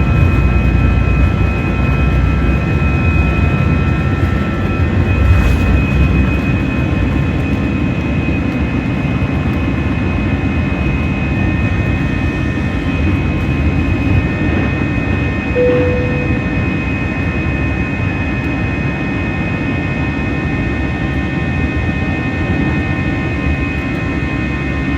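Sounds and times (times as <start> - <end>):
jet engines rumbling and whining: 0.0 - 24.9.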